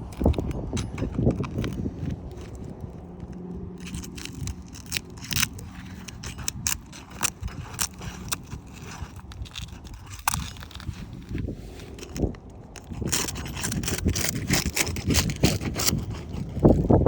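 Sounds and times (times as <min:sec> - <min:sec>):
tool scraping roof shingles: 0:00.0 - 0:17.0.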